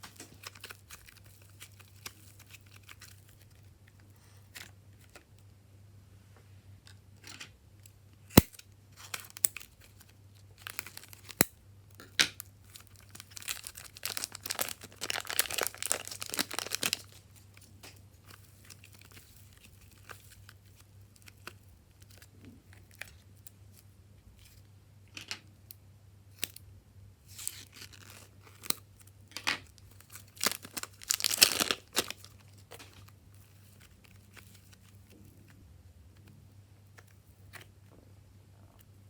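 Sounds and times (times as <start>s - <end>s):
faint low hum: 0.0s - 39.0s
slime crackling and popping: 12.7s - 17.2s, 30.0s - 32.9s.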